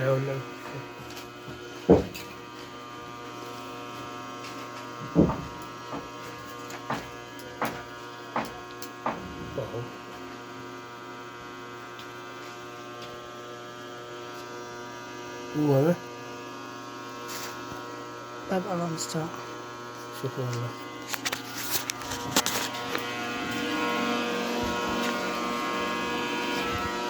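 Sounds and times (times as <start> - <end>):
steady hum: 0.0 - 27.0
sharp knocks and clicks: 5.0 - 6.2, 6.8 - 9.5.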